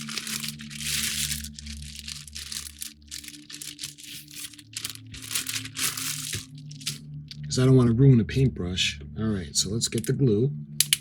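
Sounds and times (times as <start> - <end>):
rustling and crinkling: 0.0 - 7.4
steady low hum: 0.0 - 11.0.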